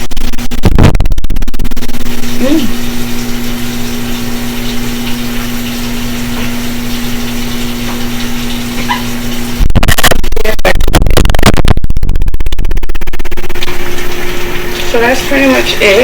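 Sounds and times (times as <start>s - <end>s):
tap water pouring into sink: 2.2s - 9.6s, 13.6s - 16.0s.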